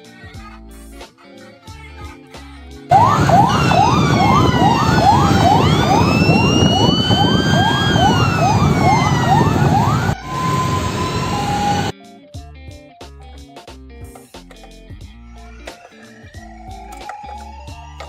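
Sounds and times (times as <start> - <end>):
road noise: 2.9 - 11.9
siren rising whoop: 2.9 - 11.9, 16.0 - 18.0
siren wail: 2.9 - 11.9, 15.9 - 18.0.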